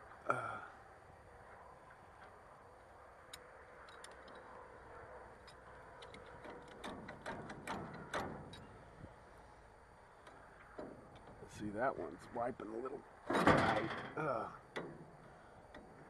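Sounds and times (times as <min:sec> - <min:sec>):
light metal clicks and scrapes: 0:03.2 - 0:09.0.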